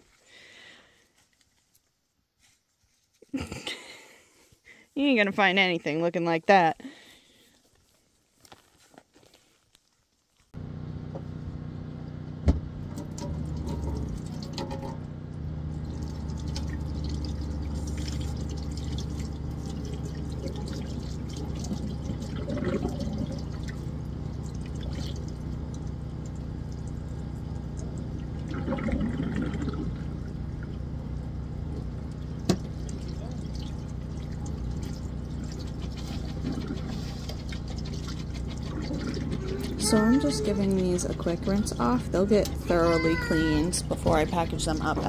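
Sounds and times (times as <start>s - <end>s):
steady low hum: 10.6s - 45.0s
water pouring and splashing: 12.9s - 15.1s, 15.7s - 30.9s, 31.8s - 45.0s.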